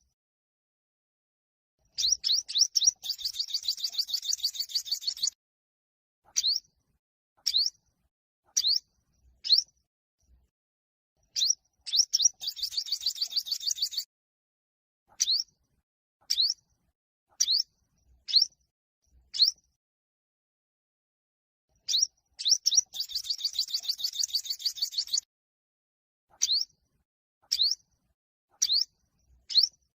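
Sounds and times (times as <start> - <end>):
bird chirping: 1.8 - 5.4, 6.2 - 6.7, 7.4 - 7.8, 8.5 - 9.8, 11.3 - 14.1, 15.1 - 15.6, 16.2 - 16.7, 17.3 - 18.6, 19.3 - 19.7, 21.8 - 25.3, 26.3 - 26.8, 27.4 - 27.9, 28.6 - 29.9.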